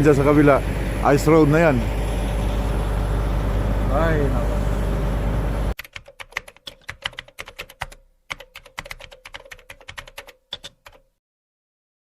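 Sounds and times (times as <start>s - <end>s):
rapid sharp clicks: 5.8s - 11.1s.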